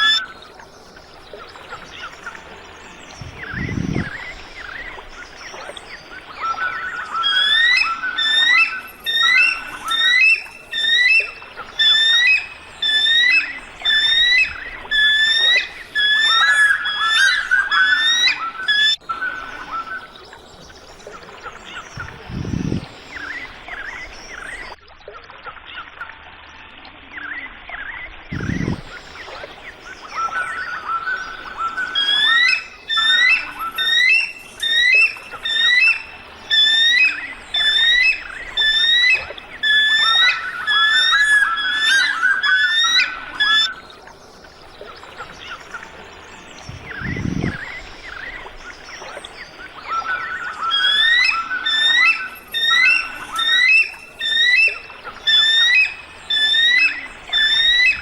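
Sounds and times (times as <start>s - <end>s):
birds chirping: 0.0s - 24.8s, 28.3s - 58.0s
bird piping whistled notes: 3.1s - 20.2s, 21.8s - 24.8s, 28.3s - 43.8s, 46.6s - 58.0s
dull low thumps: 3.2s - 4.3s, 22.0s - 22.9s, 28.3s - 29.0s, 46.6s - 47.8s.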